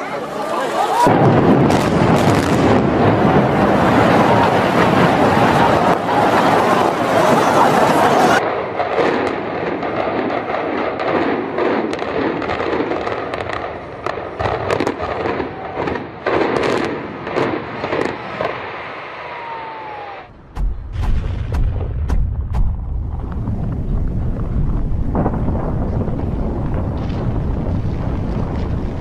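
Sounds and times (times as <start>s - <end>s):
sharp cracks and bangs: 1.1s - 7.5s, 8.4s - 18.8s, 20.4s - 29.0s
falling whistle: 19.2s - 20.4s
wind on microphone: 20.2s - 29.0s
heavy low rumble: 20.3s - 29.0s
loud crashing: 20.3s - 29.0s.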